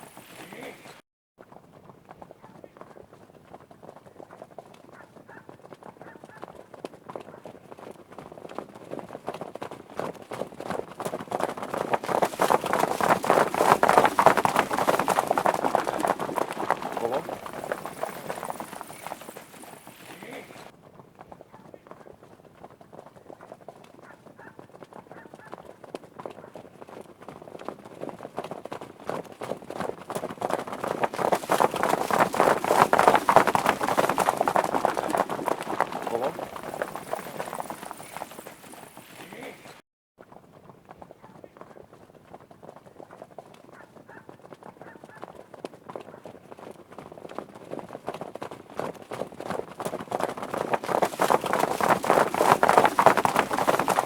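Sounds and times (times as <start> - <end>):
hoofbeats of running horses: 0.0 - 54.0.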